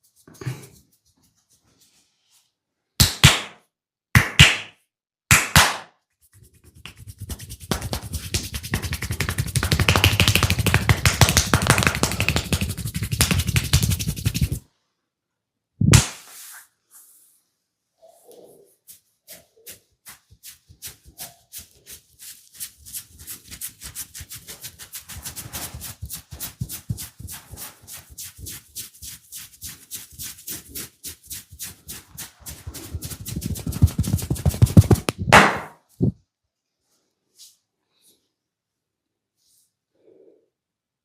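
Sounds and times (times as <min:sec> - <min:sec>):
hands tapping and slapping body: 0:03.0 - 0:03.6, 0:04.2 - 0:06.0, 0:06.6 - 0:14.6, 0:15.9 - 0:16.2, 0:32.7 - 0:36.2.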